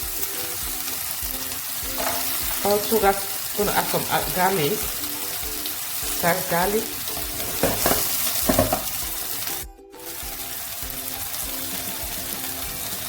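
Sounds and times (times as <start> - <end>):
onions sizzling in oil: 0.0 - 13.0
soft background music: 0.0 - 13.0.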